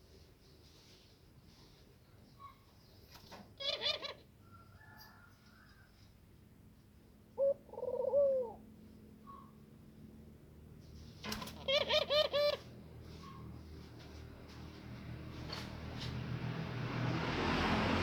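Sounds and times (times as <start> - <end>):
dove cooing: 7.3 - 8.7, 11.5 - 13.4.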